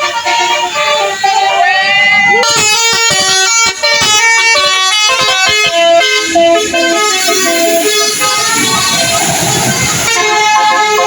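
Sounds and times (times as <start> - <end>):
bus musical air horn: 0.0 - 11.0.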